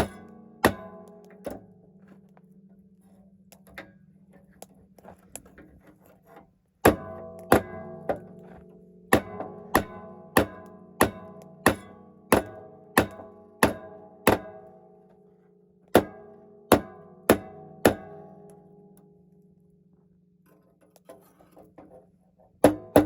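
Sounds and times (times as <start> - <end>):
hammer striking metal on anvil: 0.0 - 1.6, 6.8 - 8.4, 9.1 - 14.7, 16.0 - 18.3.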